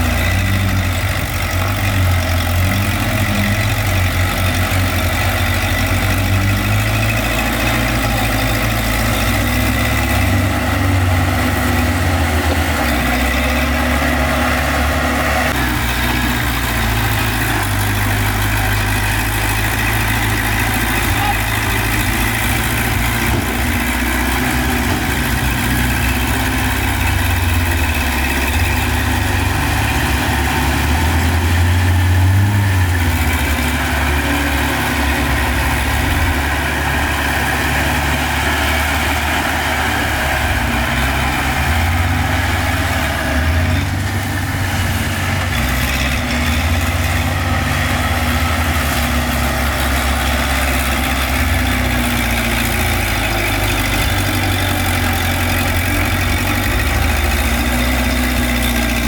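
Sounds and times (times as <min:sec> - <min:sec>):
heavy diesel engine running: 0:00.0 - 0:59.0.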